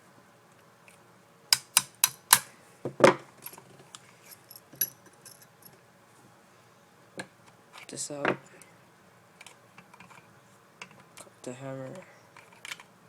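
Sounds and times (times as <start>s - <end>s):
small parts clicking and clattering: 1.5s - 2.5s, 3.4s - 5.8s.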